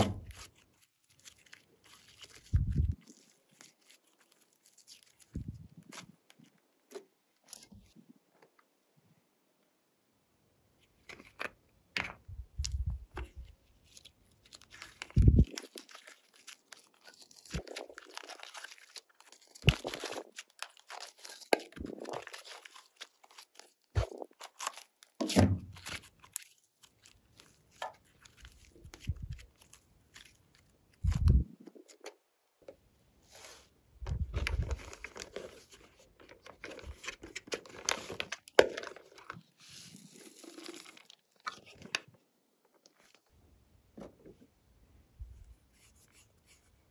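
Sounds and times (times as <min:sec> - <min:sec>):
slime crackling and tearing: 0:00.1 - 0:06.6, 0:12.6 - 0:31.1, 0:34.3 - 0:42.1.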